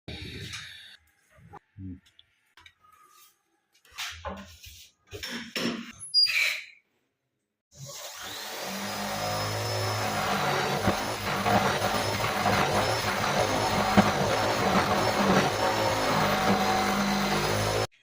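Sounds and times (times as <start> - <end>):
electric power tool humming: 7.9 - 17.9.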